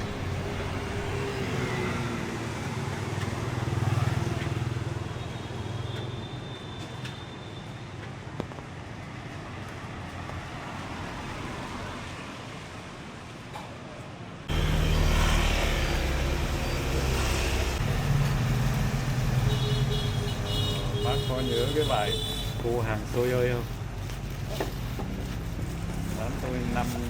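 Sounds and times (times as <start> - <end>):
street traffic: 0.0 - 27.0
engines running close by: 14.5 - 20.7.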